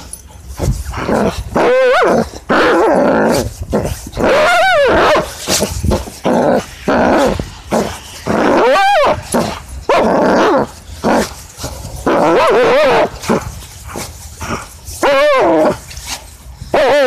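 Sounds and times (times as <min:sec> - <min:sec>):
dog growling and whining: 0:00.0 - 0:17.0.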